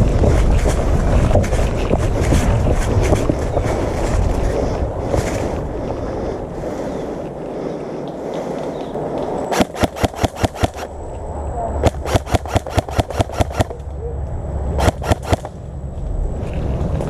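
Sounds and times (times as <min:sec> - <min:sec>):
wind on microphone: 0:00.0 - 0:07.4
airsoft gun shots: 0:09.5 - 0:10.9, 0:11.8 - 0:13.8, 0:14.8 - 0:15.6.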